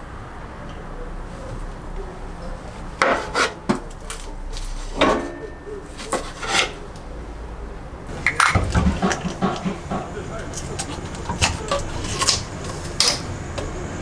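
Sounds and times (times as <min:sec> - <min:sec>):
scraping and rubbing: 0:01.3 - 0:07.1, 0:08.1 - 0:13.7
objects knocking on hard surface: 0:08.1 - 0:13.7.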